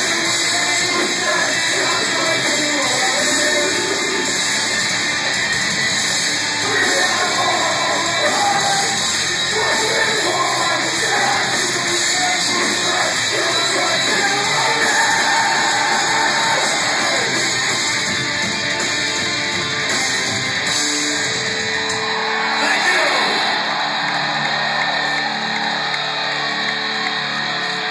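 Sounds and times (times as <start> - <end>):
shouted and sung vocals: 0.0 - 4.5, 6.5 - 17.7, 22.0 - 26.2
metalcore band playing live: 0.0 - 27.9.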